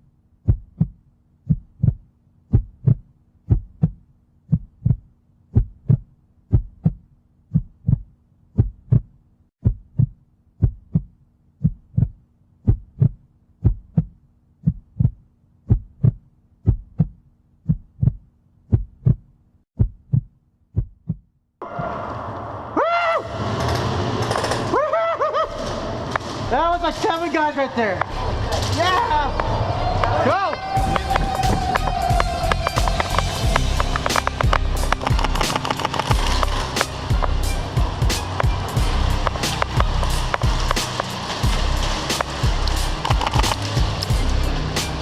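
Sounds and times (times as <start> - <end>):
heartbeat thumps: 0.4 - 21.3, 30.8 - 36.5, 37.1 - 44.3.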